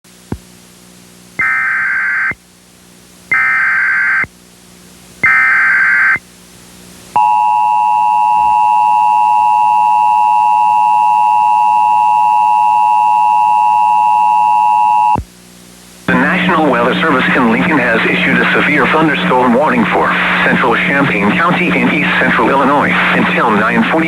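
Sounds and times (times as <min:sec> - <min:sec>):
screechy data signal bursts: 0:01.4 - 0:02.4, 0:03.3 - 0:04.2, 0:05.2 - 0:06.2.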